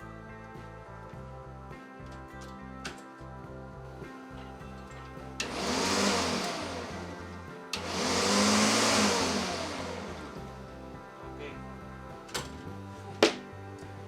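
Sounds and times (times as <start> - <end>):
background music: 0.0 - 14.0
lawn mower motor spinning: 5.3 - 10.8.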